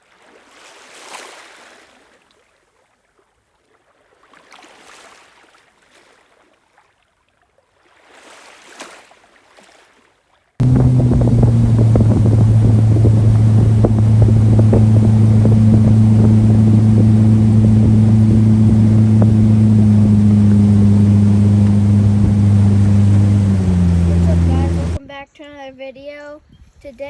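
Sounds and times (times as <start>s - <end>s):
boat engine hum: 10.6s - 25.0s.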